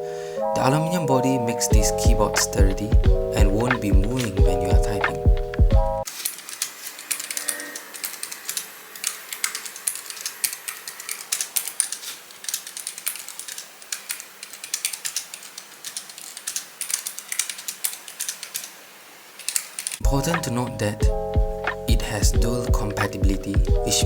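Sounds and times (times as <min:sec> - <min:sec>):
keyboard keystroke clacks: 0:01.8 - 0:18.8.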